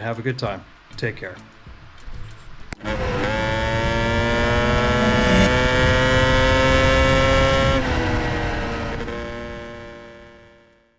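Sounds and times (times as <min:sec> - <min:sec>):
engine revving high: 0:02.8 - 0:10.4.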